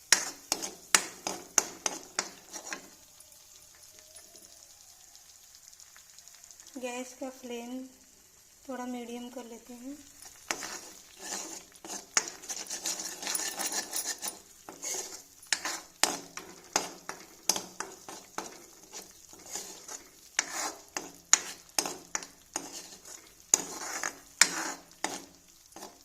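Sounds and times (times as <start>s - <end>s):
spoon scraping a pan: 0.0s - 3.0s, 10.2s - 26.0s
paste sizzling in ghee: 0.0s - 26.0s.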